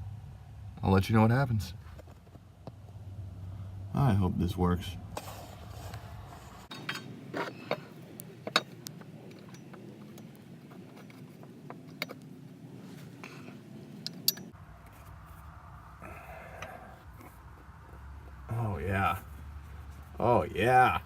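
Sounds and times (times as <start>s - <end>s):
sharp clicks and knocks: 6.7s - 12.3s.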